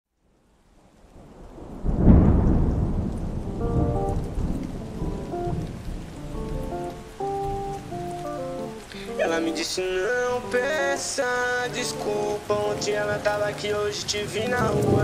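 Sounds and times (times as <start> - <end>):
rain falling: 0.1 - 15.0
thunder rolling: 1.1 - 7.8, 13.7 - 15.0.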